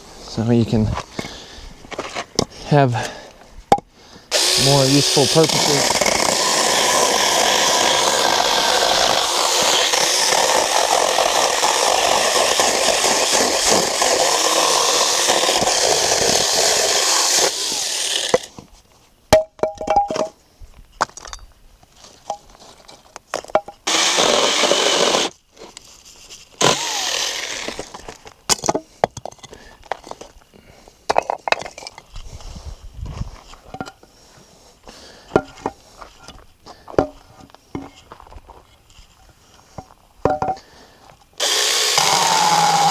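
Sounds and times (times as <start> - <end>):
battery saw cutting firewood: 4.3 - 18.6, 23.8 - 25.4, 26.6 - 28.0, 41.4 - 42.9.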